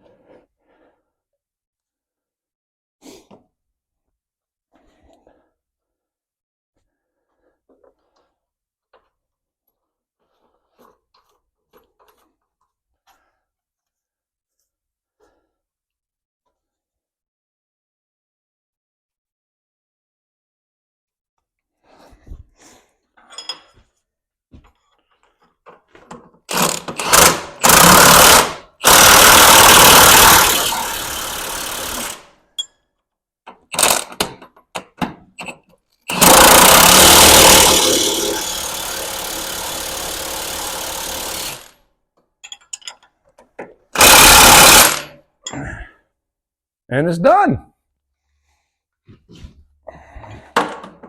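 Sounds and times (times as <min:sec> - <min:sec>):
impact wrench hammering: 0:26.5 - 0:32.2, 0:36.1 - 0:41.7, 0:44.0 - 0:45.2.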